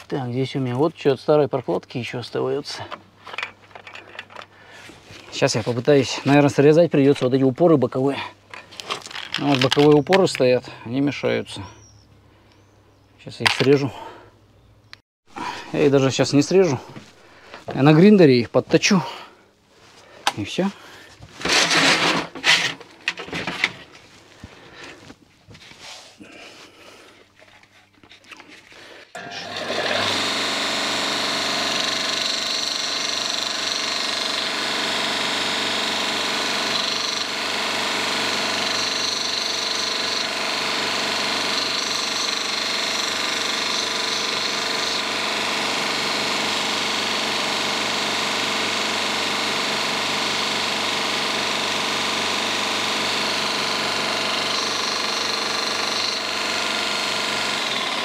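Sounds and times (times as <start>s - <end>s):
grinder grinding: 8.5s - 10.6s, 21.1s - 25.1s, 27.0s - 58.0s.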